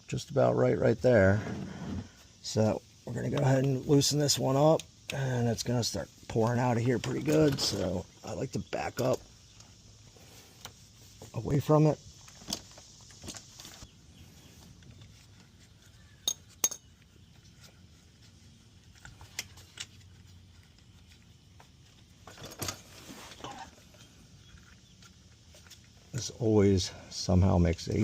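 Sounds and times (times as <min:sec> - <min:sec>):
metallic clinks of a wrench: 0:16.2 - 0:16.9.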